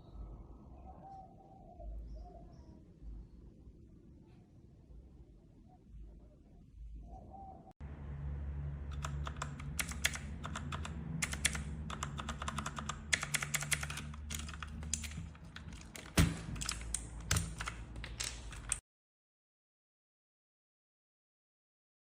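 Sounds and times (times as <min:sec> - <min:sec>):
mechanical keyboard typing: 0:08.9 - 0:18.8.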